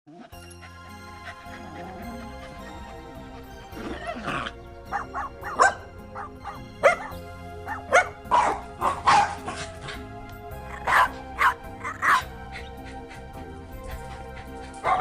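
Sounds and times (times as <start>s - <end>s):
background music: 0.1s - 15.0s
dog barking: 4.9s - 10.0s, 10.7s - 12.3s, 14.8s - 15.0s.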